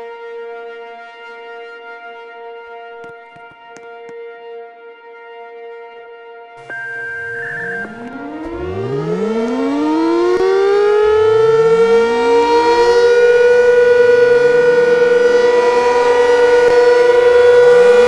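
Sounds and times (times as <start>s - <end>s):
warning siren wailing: 6.6s - 18.0s.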